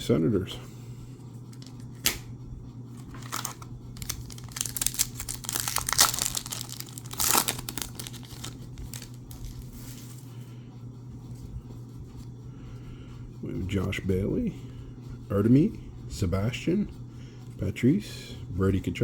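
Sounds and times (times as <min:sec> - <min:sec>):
steady low hum: 0:00.0 - 0:19.0
foil wrapper crinkling and tearing: 0:03.0 - 0:10.1.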